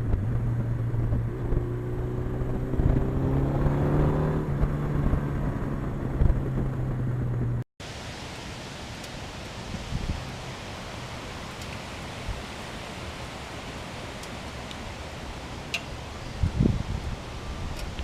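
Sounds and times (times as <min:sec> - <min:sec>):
wind noise: 0:00.0 - 0:07.6, 0:09.5 - 0:10.6, 0:15.8 - 0:18.0.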